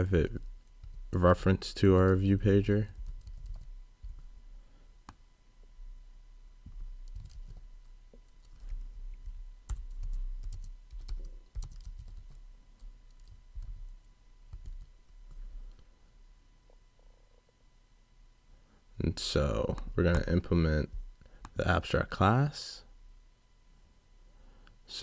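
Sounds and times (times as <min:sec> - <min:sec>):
typing on computer keyboard: 0:02.9 - 0:04.2, 0:06.7 - 0:07.7, 0:08.4 - 0:13.9, 0:14.5 - 0:14.9.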